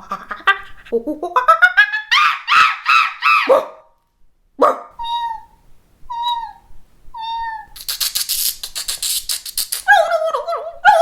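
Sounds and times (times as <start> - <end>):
girl imitating animal calls: 5.0 - 7.8
fast run of clicks: 7.8 - 9.9.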